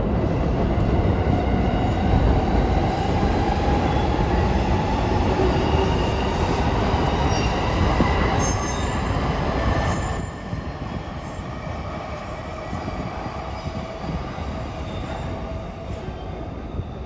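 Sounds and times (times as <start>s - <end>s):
high wheel squeal: 8.2s - 10.3s.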